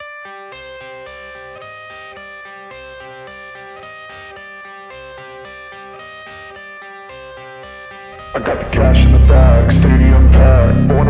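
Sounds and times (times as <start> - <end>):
guitar playing repeating riff: 4.9 - 11.0
steady bass pulse: 8.3 - 11.0.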